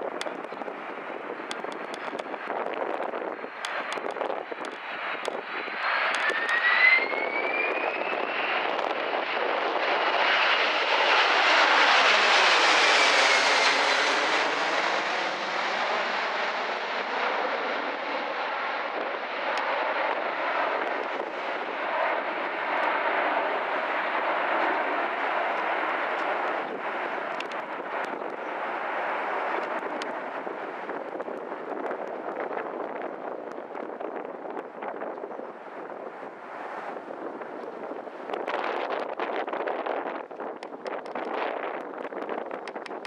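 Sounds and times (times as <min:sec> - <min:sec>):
jet airliner passing overhead: 0:00.0 - 0:43.0
engine whine rising: 0:06.0 - 0:09.0.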